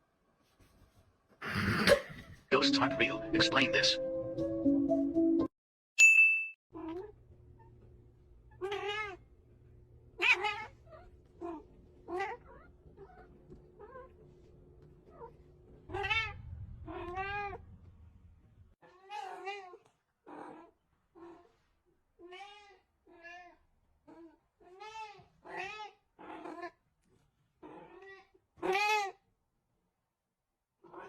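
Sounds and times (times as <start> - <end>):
low background rumble: 6.8 - 18.8
cat meowing: 8.5 - 9.2, 10.2 - 14.2, 15.1 - 17.6, 22.2 - 26.7, 27.6 - 29.2.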